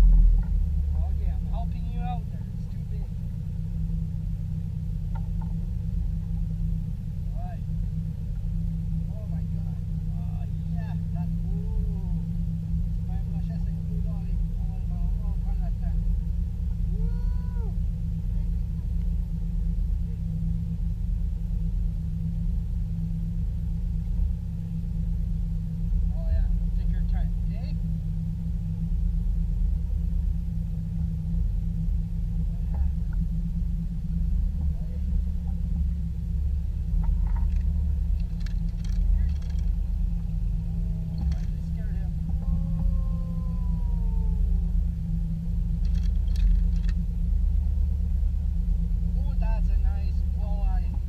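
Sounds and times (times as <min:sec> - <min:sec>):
boat motor droning: 0:00.0 - 0:51.0
engine rumbling steadily: 0:00.0 - 0:51.0
short clicks or rattles: 0:37.0 - 0:39.8, 0:45.8 - 0:47.0
long tone sliding downward: 0:40.7 - 0:45.5.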